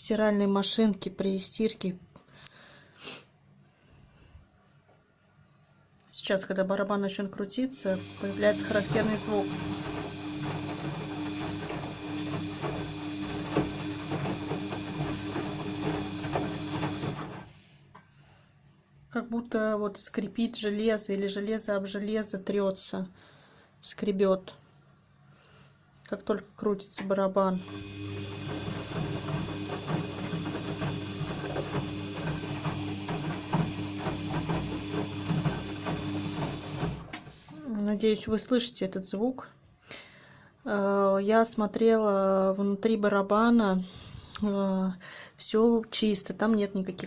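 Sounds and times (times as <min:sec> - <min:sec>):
washing machine drum turning: 0:08.0 - 0:17.5, 0:27.6 - 0:37.4.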